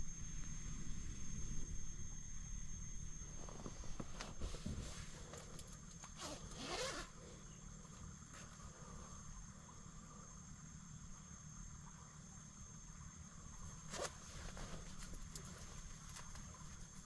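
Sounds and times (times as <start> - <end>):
zipper pulled: 6.0 - 7.2.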